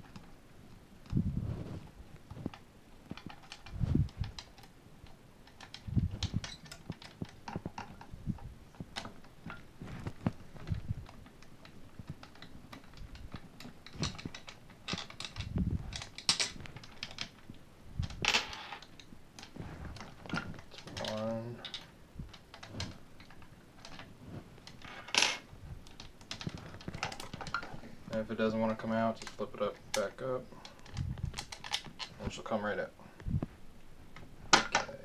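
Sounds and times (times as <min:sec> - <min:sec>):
allen key clicking on screws: 0:03.1 - 0:08.1.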